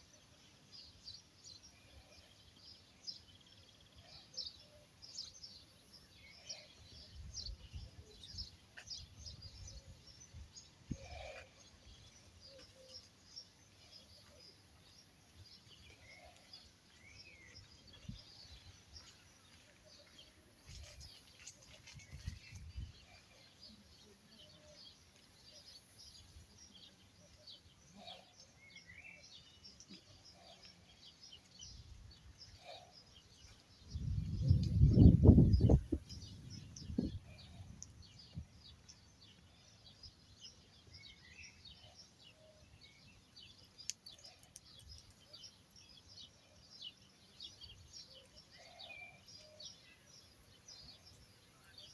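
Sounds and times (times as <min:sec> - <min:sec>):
small birds chirping: 0:00.0 - 0:51.9.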